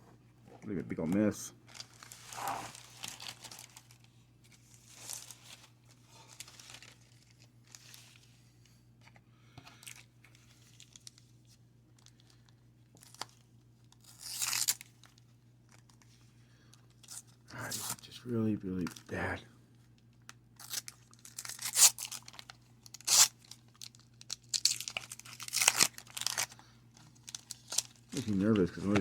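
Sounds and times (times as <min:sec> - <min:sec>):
wax paper wrapper tearing and crinkling: 0:01.0 - 0:08.3, 0:09.9 - 0:11.4, 0:12.0 - 0:16.1, 0:20.0 - 0:29.0.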